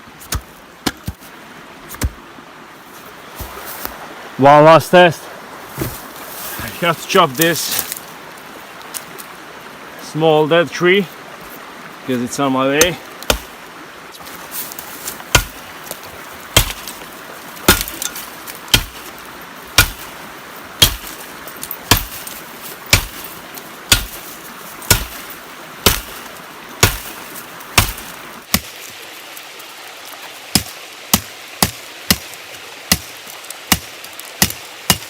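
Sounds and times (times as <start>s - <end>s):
shovel blade chopping tree: 0.2s - 1.2s, 12.8s - 13.5s, 14.7s - 20.2s, 20.8s - 28.9s, 30.5s - 35.0s.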